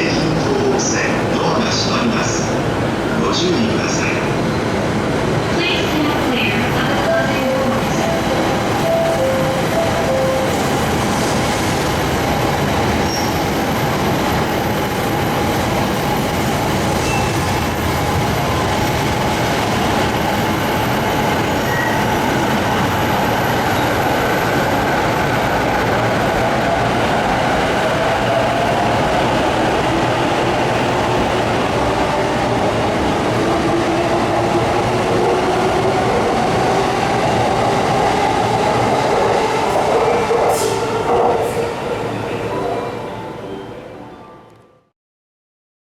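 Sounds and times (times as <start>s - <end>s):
train wheels rumbling on rails: 3.8s - 42.1s.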